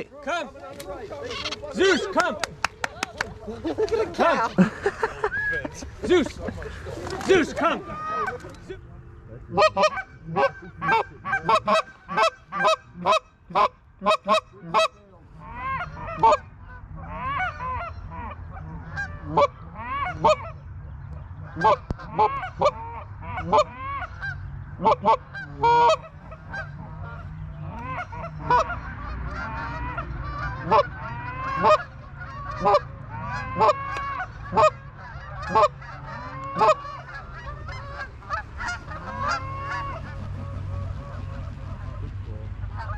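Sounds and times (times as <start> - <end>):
geese honking: 0.0 - 42.9
low steady rumble: 0.0 - 42.9.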